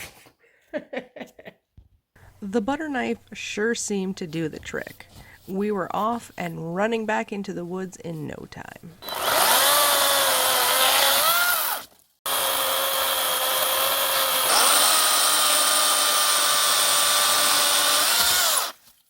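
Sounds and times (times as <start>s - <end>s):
electric chainsaw cutting wood: 9.0s - 18.8s.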